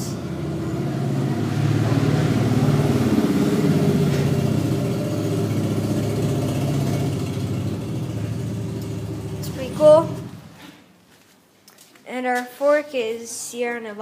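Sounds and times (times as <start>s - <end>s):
vehicle engine running: 0.0s - 10.6s.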